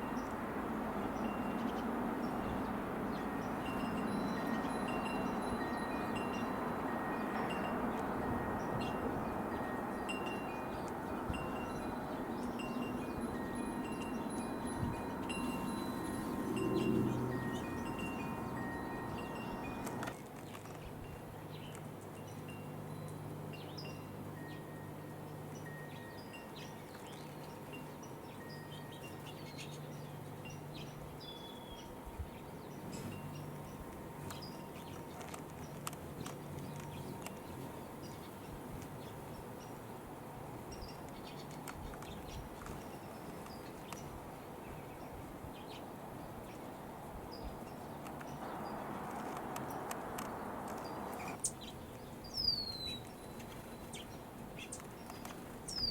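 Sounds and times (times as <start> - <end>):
small songbirds chirping: 0.0 - 55.9
wind chimes ringing: 1.1 - 20.2, 22.1 - 35.2.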